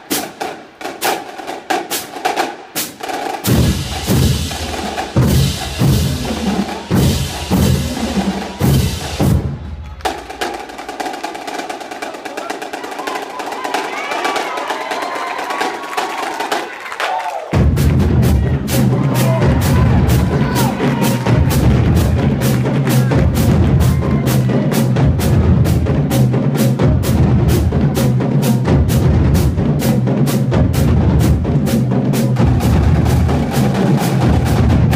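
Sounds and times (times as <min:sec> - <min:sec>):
snare and tenor drum strokes: 0:00.0 - 0:14.4
snare drum: 0:00.0 - 0:34.9
bass drum tones: 0:17.6 - 0:34.9.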